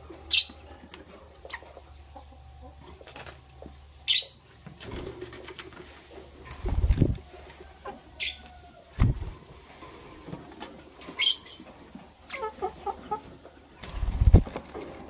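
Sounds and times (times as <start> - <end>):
bird high chirps: 4.1 - 4.4
wings fluttering: 4.8 - 7.2, 9.0 - 9.4, 13.8 - 15.0.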